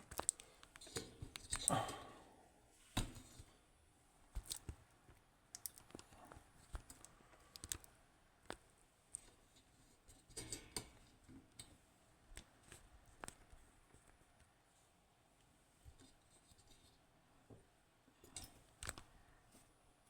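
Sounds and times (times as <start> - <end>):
small clicks and light taps: 0.0 - 1.7, 4.4 - 14.5, 18.2 - 19.1.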